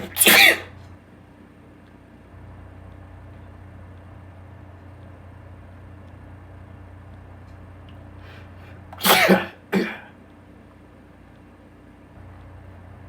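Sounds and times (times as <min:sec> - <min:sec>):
man sneezing: 0:00.0 - 0:00.8, 0:09.0 - 0:10.1
faint breaths in: 0:08.2 - 0:08.9.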